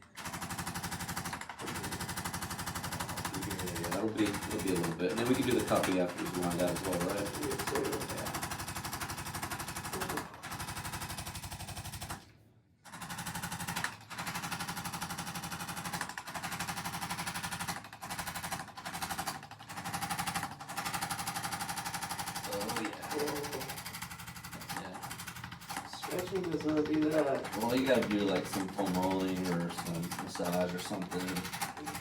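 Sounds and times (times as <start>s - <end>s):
percussion massager hammering: 0.0s - 12.2s, 12.9s - 32.0s.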